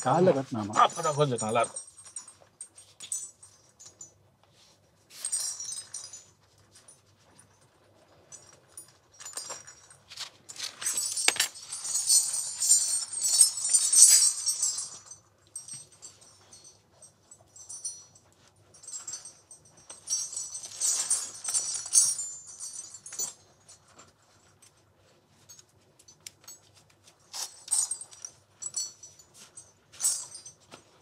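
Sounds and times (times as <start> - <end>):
ankle bells jingling: 0.0 - 4.1, 10.6 - 24.0.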